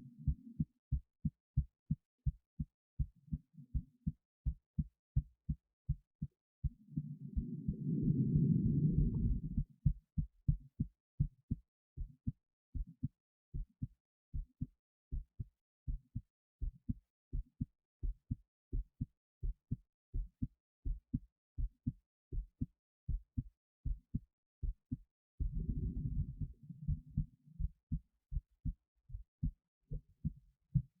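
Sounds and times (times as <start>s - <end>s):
heartbeat lub-dub thumps: 0.1s - 31.0s
low rushing noise: 7.4s - 9.6s, 25.4s - 26.9s.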